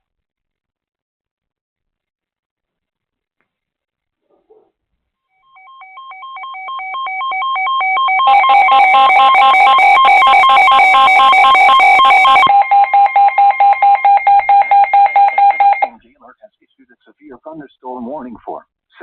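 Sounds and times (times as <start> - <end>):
rapid electronic alarm beeping: 5.5 - 15.9.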